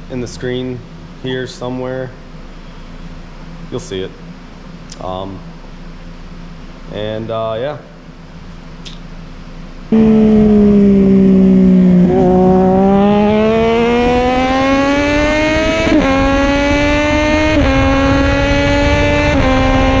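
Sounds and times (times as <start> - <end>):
car engine accelerating hard: 9.9 - 20.0.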